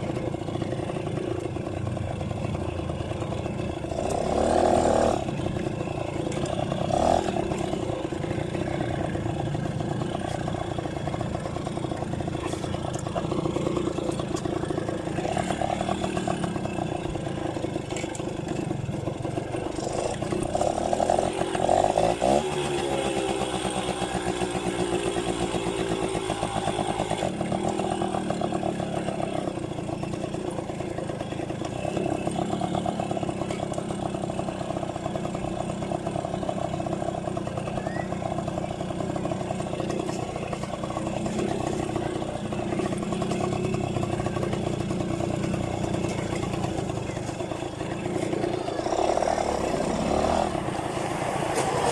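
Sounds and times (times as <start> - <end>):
moped engine running: 0.0 - 51.9.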